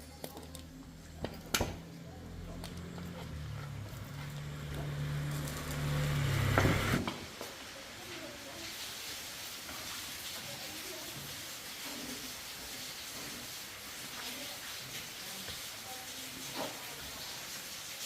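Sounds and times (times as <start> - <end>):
machine hum: 1.8 - 7.0
faint hiss: 4.9 - 18.0.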